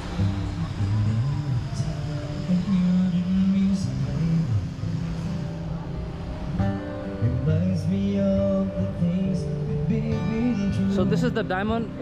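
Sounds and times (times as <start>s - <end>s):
acoustic guitar music: 0.0s - 12.0s.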